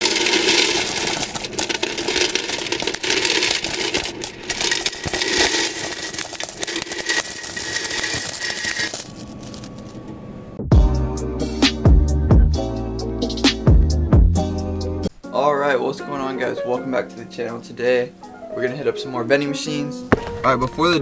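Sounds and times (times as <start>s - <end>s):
coins clattering and jingling: 0.0s - 10.0s.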